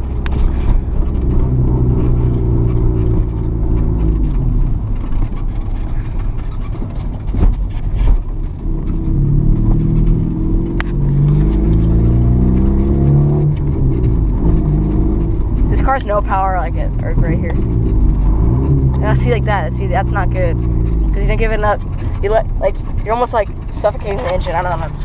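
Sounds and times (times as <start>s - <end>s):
car engine accelerating: 0.0s - 25.0s.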